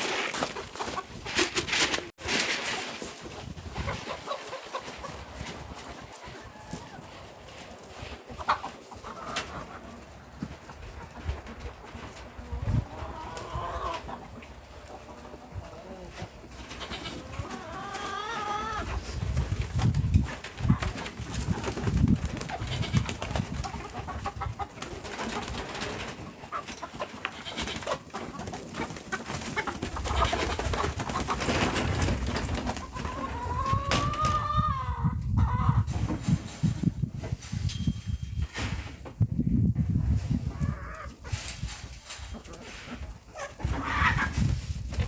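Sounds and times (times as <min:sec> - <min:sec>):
farm birds calling: 0:02.8 - 0:35.9.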